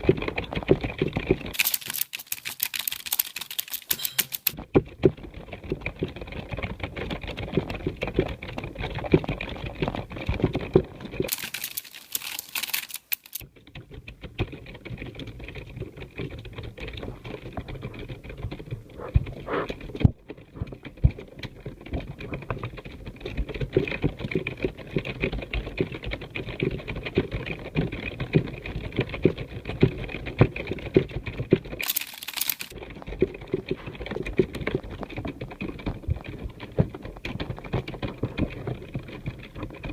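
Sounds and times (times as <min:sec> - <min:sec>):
keyboard typing: 0:01.1 - 0:04.6, 0:11.3 - 0:13.4, 0:31.8 - 0:34.8.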